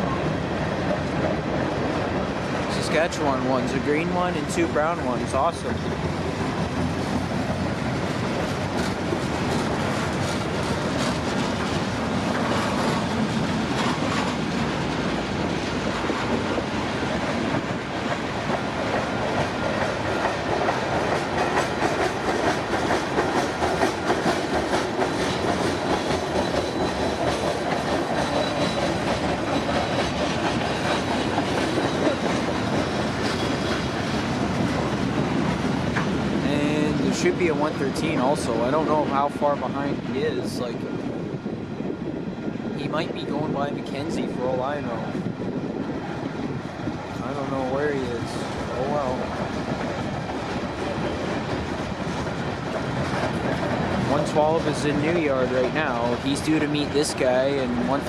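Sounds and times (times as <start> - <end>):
freight train cars rolling past: 0.0 - 58.0
wheels clicking over rail joints: 5.6 - 38.8.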